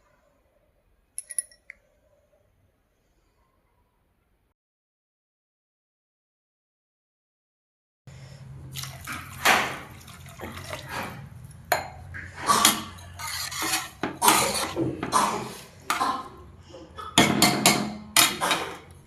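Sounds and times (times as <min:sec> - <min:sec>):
metal spoon scraping metal pan: 0:12.5 - 0:14.8.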